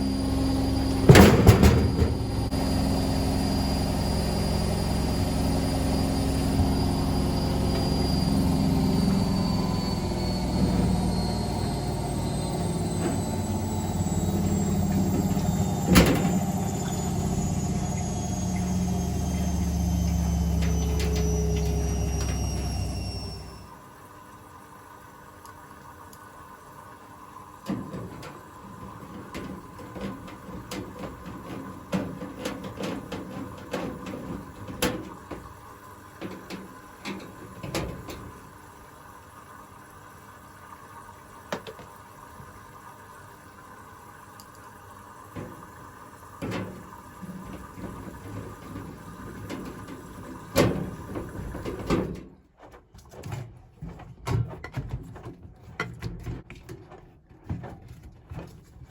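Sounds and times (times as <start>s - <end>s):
knocks and rattles on machine panels: 1.1s - 2.4s.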